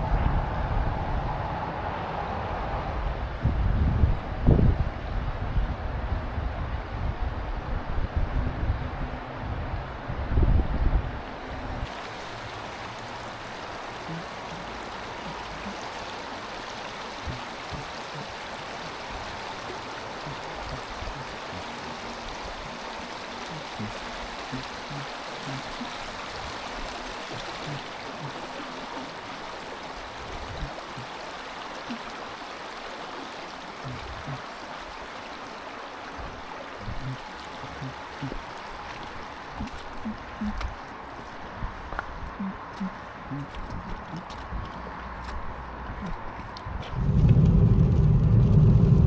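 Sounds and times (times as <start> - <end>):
stream running over rocks: 6.8 - 49.0
brief low rumble: 46.8 - 49.0.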